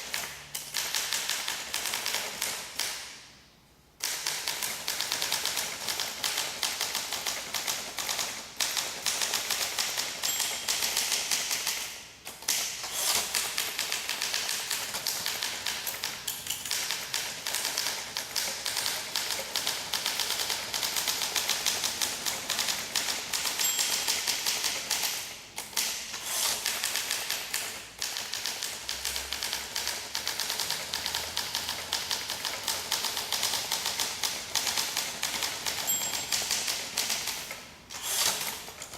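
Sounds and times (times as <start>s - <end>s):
manual typewriter typing: 0.0s - 3.0s, 4.0s - 38.9s.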